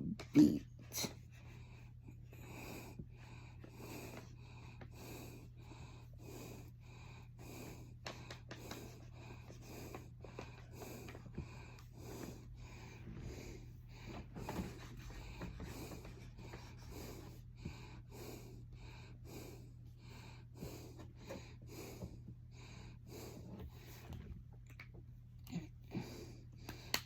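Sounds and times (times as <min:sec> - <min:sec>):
low steady hum: 0:00.0 - 0:27.0
faint breathing: 0:01.0 - 0:24.3.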